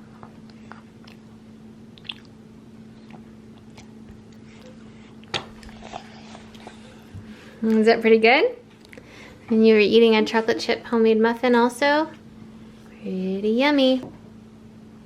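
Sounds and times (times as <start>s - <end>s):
child chewing food: 0.0s - 7.8s, 8.7s - 9.2s.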